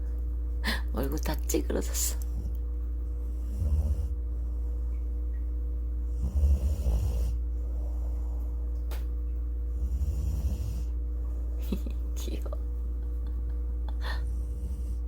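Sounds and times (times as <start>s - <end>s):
dog snoring: 3.2s - 4.6s, 6.0s - 8.5s, 9.7s - 11.0s, 14.2s - 15.0s.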